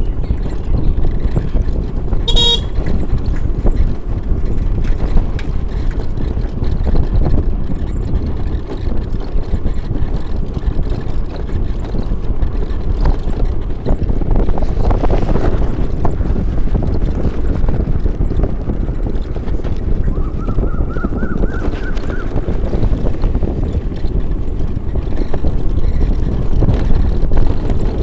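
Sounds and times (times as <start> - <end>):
low road rumble: 0.0 - 28.0
wind buffeting microphone: 0.0 - 28.0.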